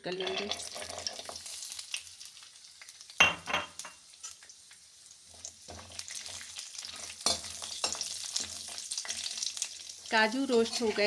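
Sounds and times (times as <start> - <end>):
nuts sizzling in oil: 0.0 - 11.0
metal clatter on pan: 3.2 - 4.4
spatula scraping pan: 10.2 - 11.0.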